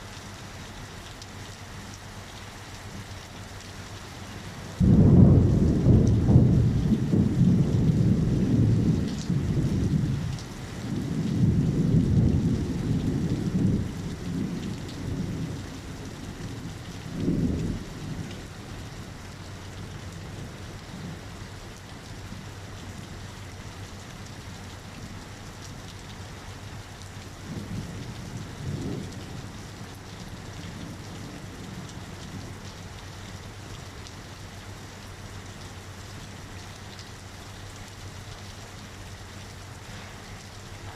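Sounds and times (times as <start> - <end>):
steady rain: 0.0 - 40.9
thunder rumbling: 4.7 - 21.3, 27.4 - 32.7.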